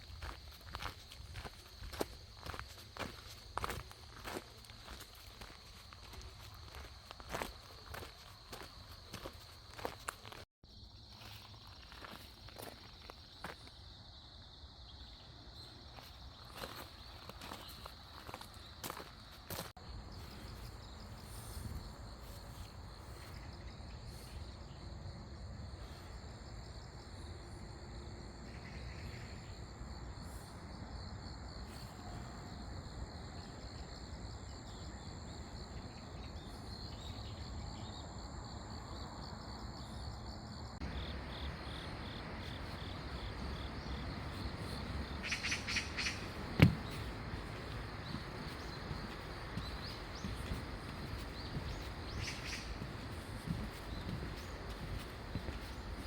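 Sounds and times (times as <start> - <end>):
crickets chirring: 0.0 - 56.0
rapid bird chirps: 43.9 - 56.0.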